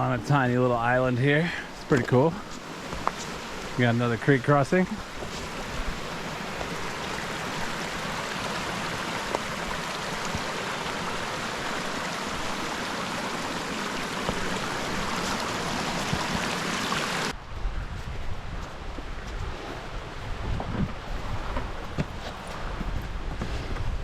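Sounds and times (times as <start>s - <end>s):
water rushing over rocks: 0.0s - 17.4s.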